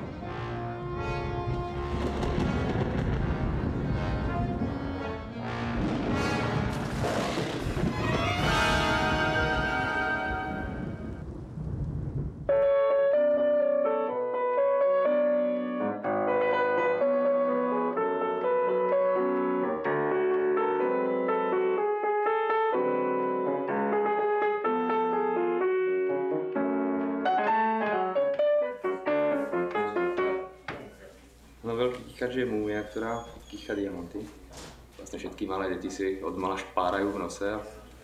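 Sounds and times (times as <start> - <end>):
low rumble: 0.0 - 12.6
piano melody: 0.0 - 30.7.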